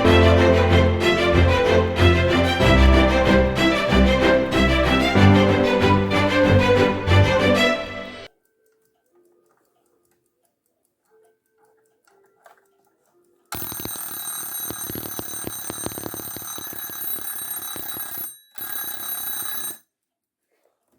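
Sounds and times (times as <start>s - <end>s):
alarm clock bell ringing: 13.6s - 19.8s.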